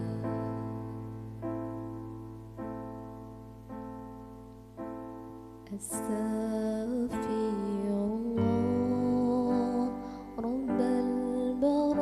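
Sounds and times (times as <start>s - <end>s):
soft piano chords: 0.0s - 12.0s.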